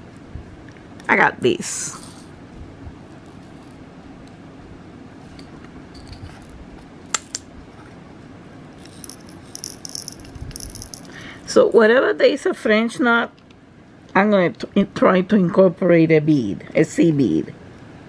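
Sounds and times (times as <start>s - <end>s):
beads rattling in container: 3.1s - 3.8s, 8.7s - 11.5s.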